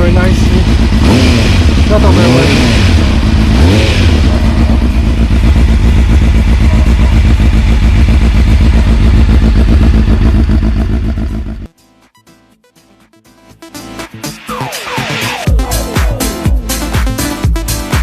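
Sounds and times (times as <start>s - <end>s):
motorcycle engine idling: 0.0s - 11.7s.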